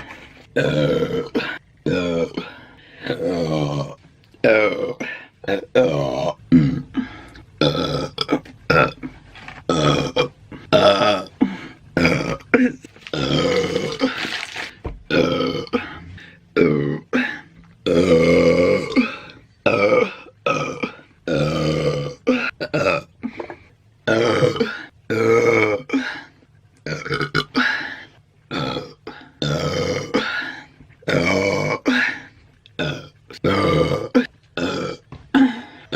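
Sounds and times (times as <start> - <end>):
woman belching: 0.6 - 2.4, 7.6 - 9.0, 12.0 - 14.2, 15.1 - 15.8, 17.9 - 23.1, 32.8 - 35.5.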